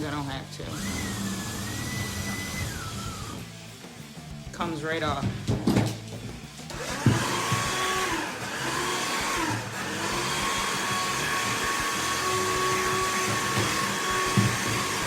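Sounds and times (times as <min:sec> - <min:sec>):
electric drill drilling metal: 0:00.6 - 0:03.7, 0:06.7 - 0:15.0.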